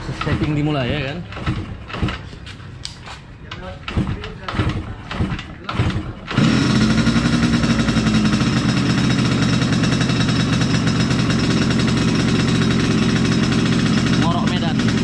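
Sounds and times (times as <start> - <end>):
two-stroke motorcycle engine idling: 3.5 - 15.0.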